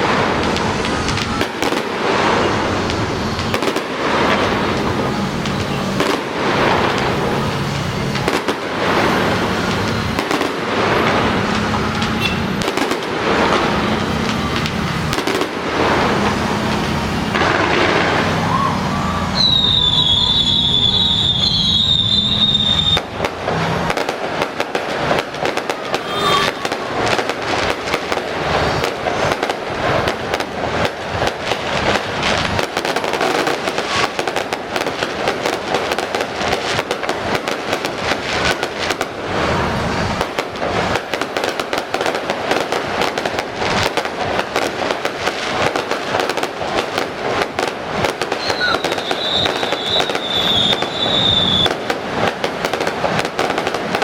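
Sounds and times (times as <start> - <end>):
fireworks crackling: 0.0 - 54.0
high wavering whistle: 19.4 - 23.0, 48.4 - 51.7.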